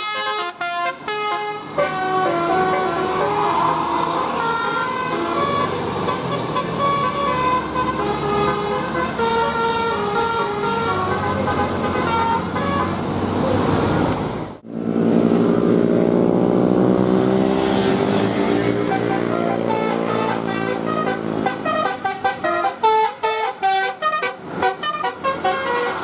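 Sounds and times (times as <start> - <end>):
musical bus horn playing a tune: 0.0 - 13.1, 17.8 - 26.0
multi-tone horn chord: 18.2 - 26.0.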